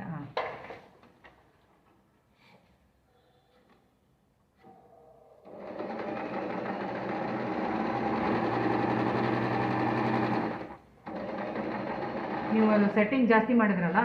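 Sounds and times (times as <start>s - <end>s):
electric sewing machine stitching: 5.5s - 13.0s.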